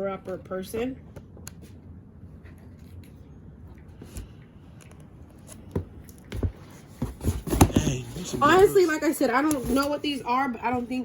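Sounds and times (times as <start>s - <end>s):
books rustling: 5.4s - 10.9s.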